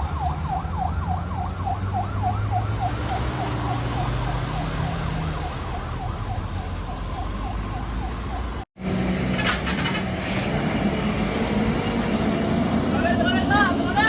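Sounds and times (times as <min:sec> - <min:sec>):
truck engine running: 0:07.8 - 0:14.0.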